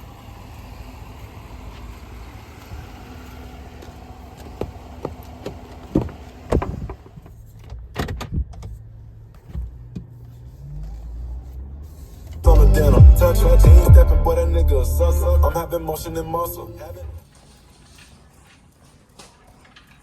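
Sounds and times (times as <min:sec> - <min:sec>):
engine hum: 0:09.8 - 0:17.2.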